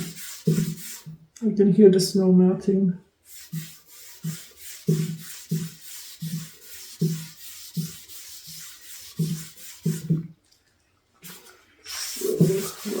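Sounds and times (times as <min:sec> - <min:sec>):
rubbing strokes on wood: 0:00.0 - 0:01.2, 0:03.2 - 0:10.2, 0:11.9 - 0:13.0.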